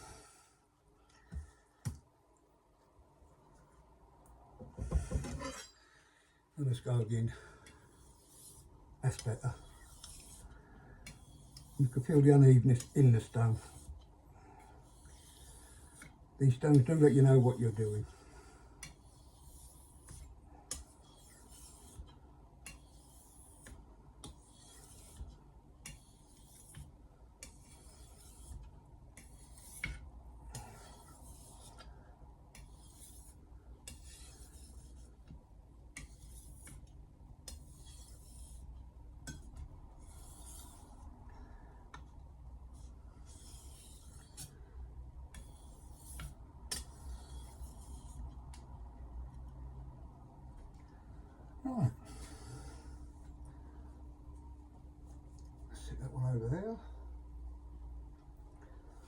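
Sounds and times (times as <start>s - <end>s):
knife scraping on whetstone: 5.1s - 5.8s, 7.9s - 14.1s, 14.8s - 16.1s, 18.8s - 31.9s, 32.5s - 35.2s, 36.0s - 41.1s, 42.8s - 44.6s, 45.3s - 48.3s.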